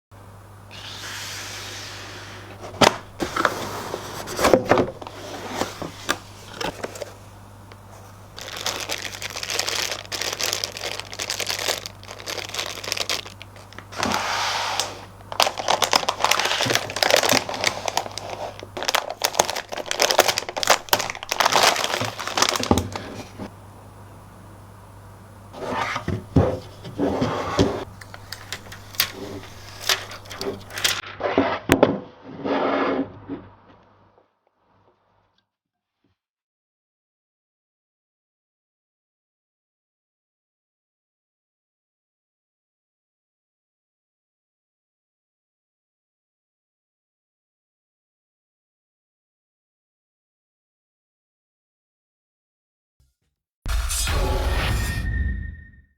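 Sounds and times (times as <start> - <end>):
faint steady hum: 0.2 - 31.0
packaging crinkling and rustling: 2.4 - 23.5, 25.6 - 31.0.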